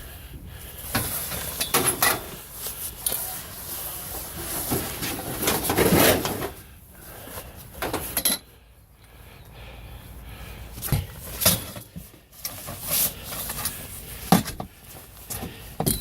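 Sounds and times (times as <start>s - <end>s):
scraping shuffle: 0.7s - 6.7s, 10.8s - 16.0s
scrap items knocking and clattering: 0.9s - 2.4s, 4.2s - 6.6s, 10.8s - 16.0s.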